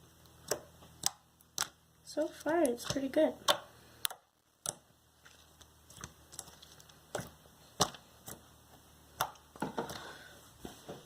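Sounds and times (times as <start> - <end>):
slime kneaded by hand: 0.0 - 10.9
sticky clicks and pops: 0.2 - 1.8, 2.4 - 4.9.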